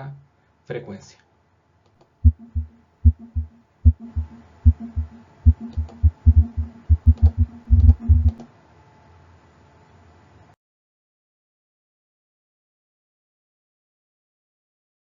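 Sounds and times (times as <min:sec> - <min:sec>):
heartbeat thuds: 0:02.2 - 0:08.4.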